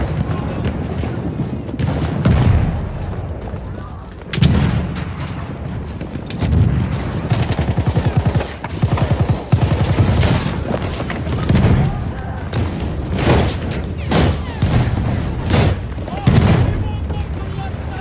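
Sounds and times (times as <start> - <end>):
explosion booms: 0.0 - 7.3, 11.1 - 18.0
machine-gun fire: 0.0 - 18.0
rifle shots: 4.3 - 18.0.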